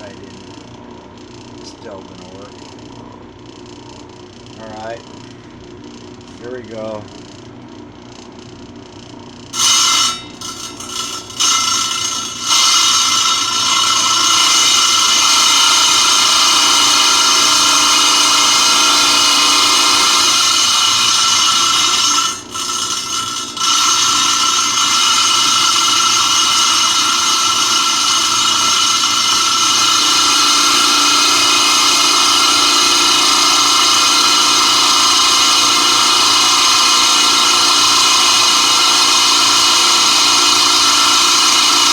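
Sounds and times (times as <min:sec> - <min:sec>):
saw blade cutting rock: 0:09.6 - 0:41.9.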